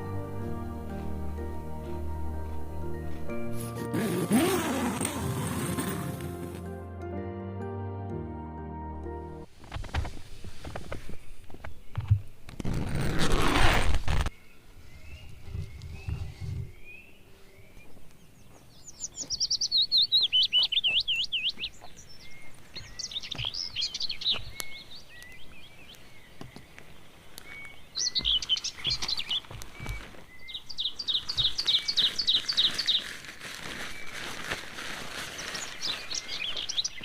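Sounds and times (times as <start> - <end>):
birds warbling and trilling: 14.3 - 37.0.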